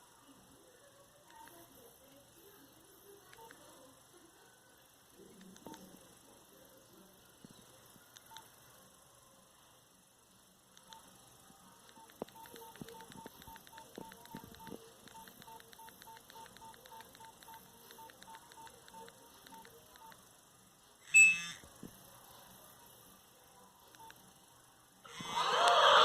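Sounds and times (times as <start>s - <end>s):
mobile phone short beeps: 21.1s - 21.6s.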